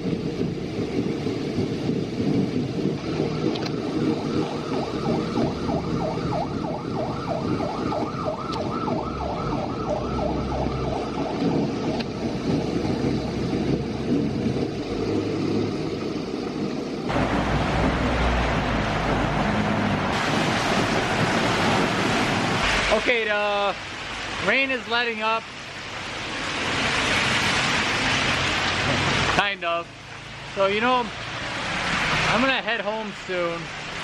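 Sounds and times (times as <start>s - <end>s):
gusting wind: 0.0s - 34.0s
heavy rain: 0.0s - 34.0s.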